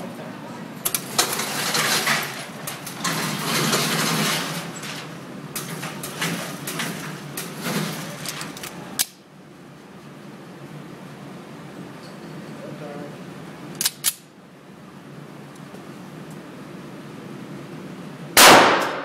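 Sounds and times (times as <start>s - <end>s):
gunshots: 18.4s - 19.0s.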